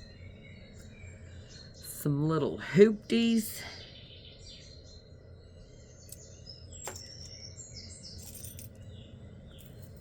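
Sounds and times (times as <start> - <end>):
metal jewelry clinking: 6.8 - 7.3, 8.1 - 8.9, 9.6 - 10.0.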